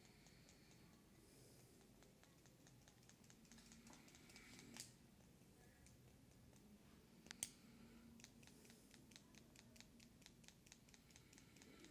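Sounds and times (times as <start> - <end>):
light tapping clicks: 5.8 - 7.6.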